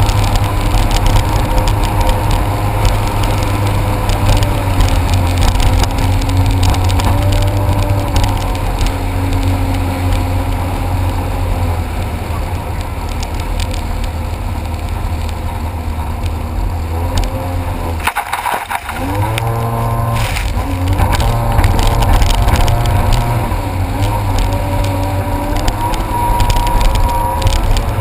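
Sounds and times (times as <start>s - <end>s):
jet ski engine revving: 16.9s - 27.0s.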